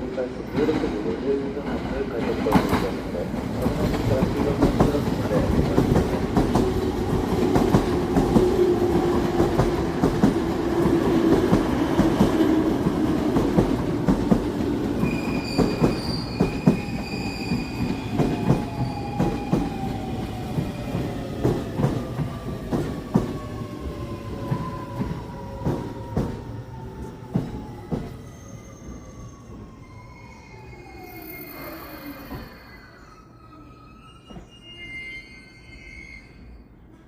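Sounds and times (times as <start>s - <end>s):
high brake squeal: 15.0s - 18.1s, 28.2s - 36.9s.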